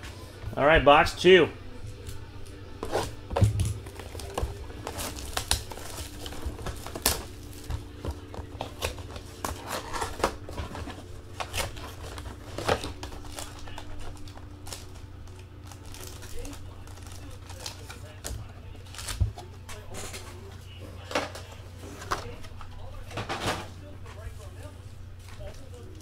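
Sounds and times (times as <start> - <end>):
plastic wrap crinkling: 1.9 - 21.5.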